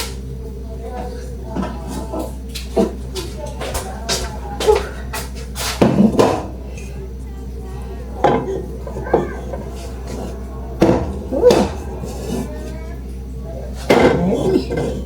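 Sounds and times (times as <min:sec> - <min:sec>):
steady low hum: 0:00.0 - 0:15.0
metal cookware clattering: 0:13.6 - 0:15.0.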